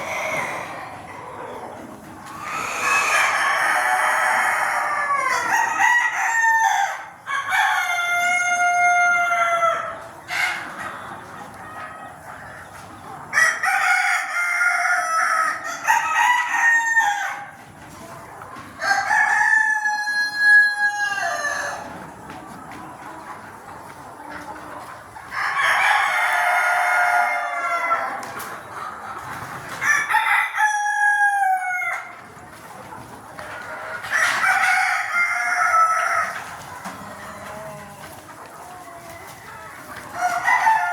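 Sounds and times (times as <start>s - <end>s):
roosters crowing: 2.4s - 10.0s, 18.8s - 22.0s, 25.3s - 28.2s, 29.8s - 32.1s, 33.8s - 38.1s, 40.1s - 40.9s.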